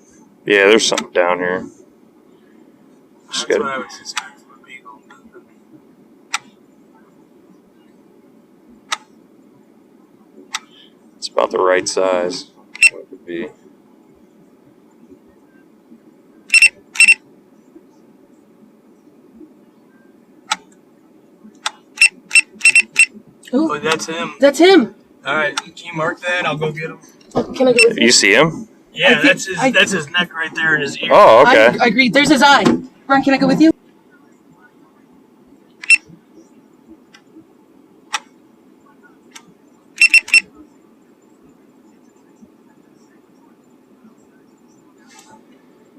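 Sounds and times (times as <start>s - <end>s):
faint low hum: 0.0s - 45.9s
sharp clicks: 8.9s - 9.1s
short electronic beeps: 16.5s - 17.2s, 22.0s - 23.1s, 40.0s - 40.5s.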